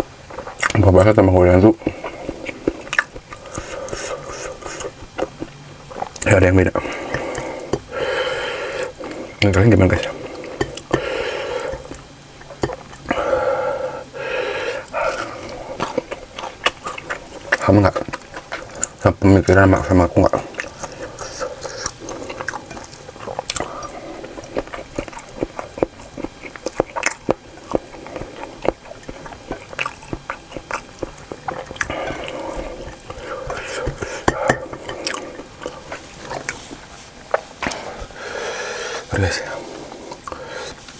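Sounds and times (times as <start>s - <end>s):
person chewing: 0.0s - 0.9s, 1.7s - 40.9s
mouth breaths: 1.8s - 5.0s, 31.6s - 36.9s.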